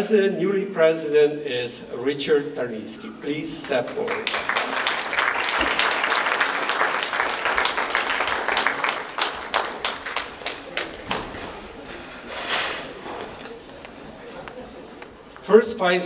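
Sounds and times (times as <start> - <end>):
audience applauding: 3.6 - 15.2.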